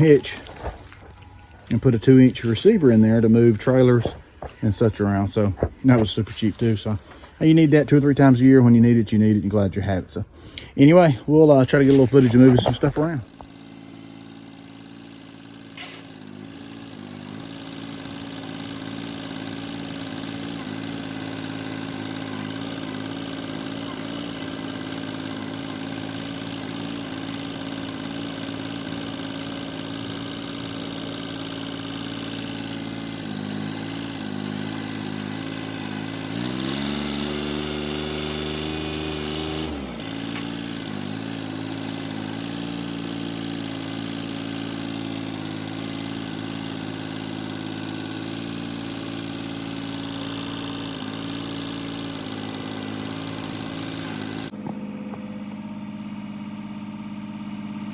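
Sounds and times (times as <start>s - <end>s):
tractor diesel engine running: 0.0s - 57.9s.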